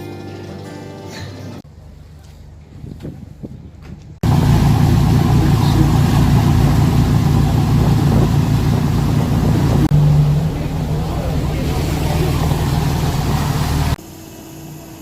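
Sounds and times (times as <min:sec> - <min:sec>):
engine running with low throb: 0:04.2 - 0:15.0.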